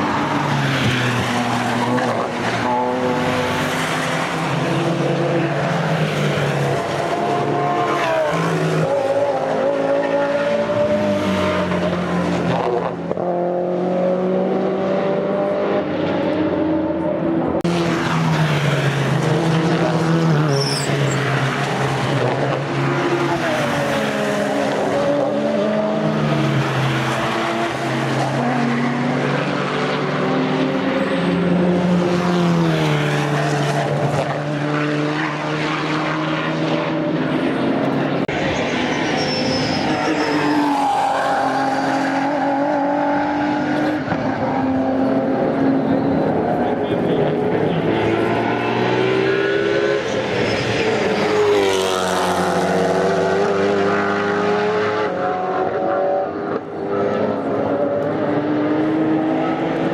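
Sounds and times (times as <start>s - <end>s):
race car engines at full throttle: 0.0s - 59.9s.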